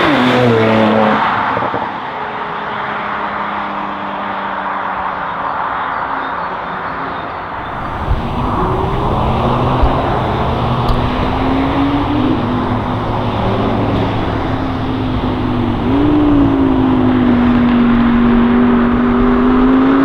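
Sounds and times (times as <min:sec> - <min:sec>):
sports car engine running: 0:07.6 - 0:19.4.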